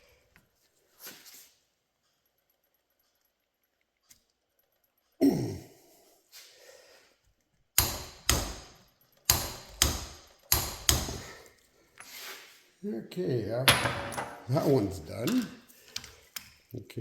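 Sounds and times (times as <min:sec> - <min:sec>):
person sighing: 0:05.2 - 0:06.1.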